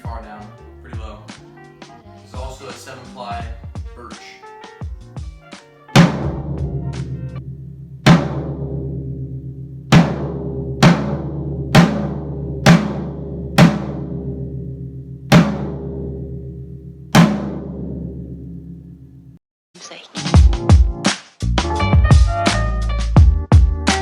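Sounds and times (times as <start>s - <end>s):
floor tom drum hits: 2.4s - 4.1s, 6.0s - 18.4s.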